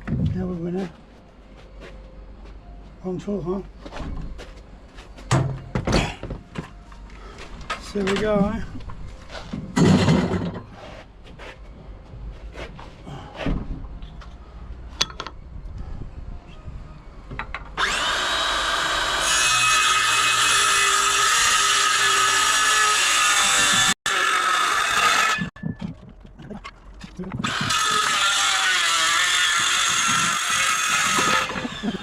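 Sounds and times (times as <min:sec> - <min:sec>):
knocks and handling noises: 0:03.7 - 0:15.4
power tool motor whining: 0:17.8 - 0:25.5, 0:27.4 - 0:32.0.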